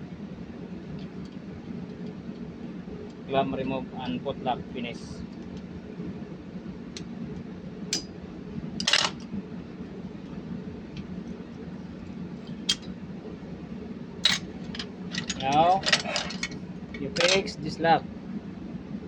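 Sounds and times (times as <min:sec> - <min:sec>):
steady low hum: 0:00.0 - 0:19.0
metallic clinks of tools: 0:14.2 - 0:14.4.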